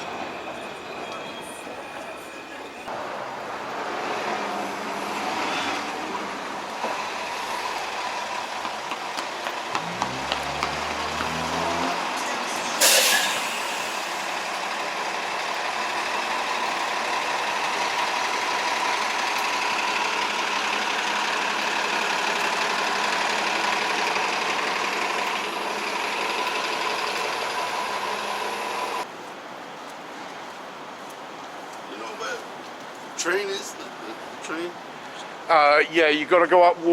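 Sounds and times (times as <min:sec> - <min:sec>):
traffic rumble: 0:00.0 - 0:36.9
engine rising in pitch: 0:09.7 - 0:14.6
air brake hiss: 0:12.8 - 0:14.4.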